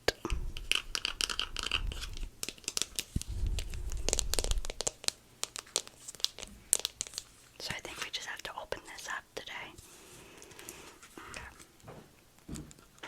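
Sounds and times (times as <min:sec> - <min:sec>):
low rumble: 0:00.2 - 0:04.8
packaging crinkling and tearing: 0:00.6 - 0:08.1.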